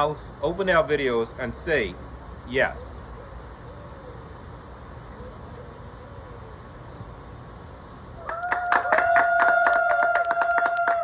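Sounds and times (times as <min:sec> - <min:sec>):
people clapping: 0:08.2 - 0:11.0.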